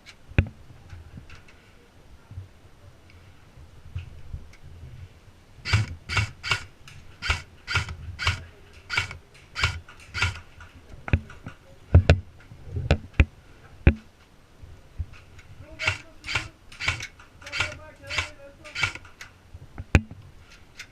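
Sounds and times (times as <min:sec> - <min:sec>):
sharp cracks: 0:05.6 - 0:11.6, 0:15.2 - 0:19.4.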